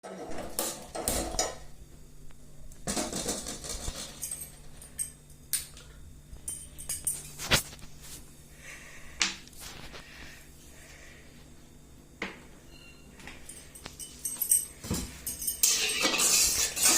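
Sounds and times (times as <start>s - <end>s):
faint steady hum: 0.1s - 16.9s
metal utensils and dishes clinking: 2.9s - 5.2s, 13.4s - 16.9s.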